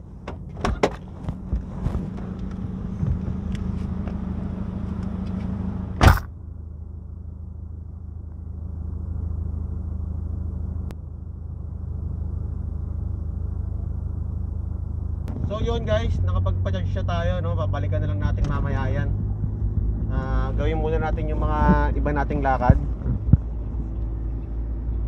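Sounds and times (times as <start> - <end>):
car engine idling: 0.0 - 25.0
car door slam: 6.0 - 6.3.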